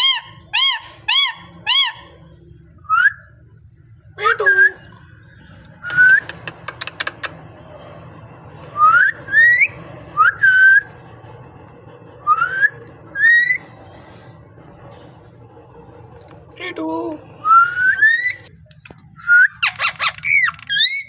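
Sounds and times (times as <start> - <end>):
sharp clicks: 5.6 - 7.4
parrot whistling: 12.3 - 13.6, 17.5 - 18.5, 19.2 - 21.0.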